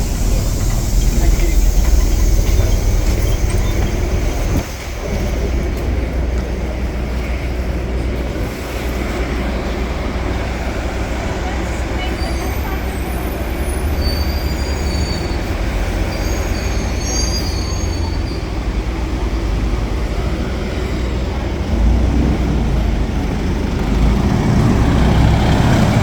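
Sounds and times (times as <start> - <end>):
high-pitched squeals: 0.0 - 5.2
bus engine rumble: 0.0 - 26.0.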